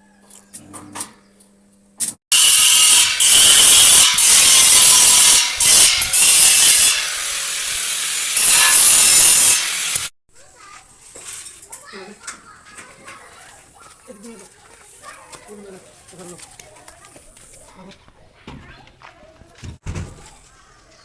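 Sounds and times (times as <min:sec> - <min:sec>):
angle grinder grinding steel: 0:02.3 - 0:10.1.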